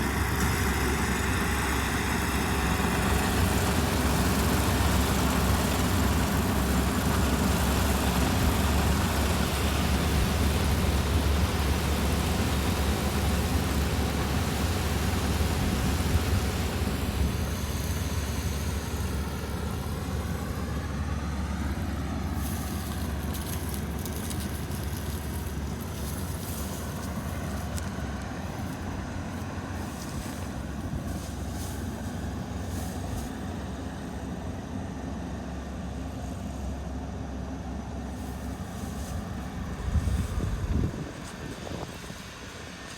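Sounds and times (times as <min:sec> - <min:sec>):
combine harvester rumbling: 0:00.0 - 0:42.9.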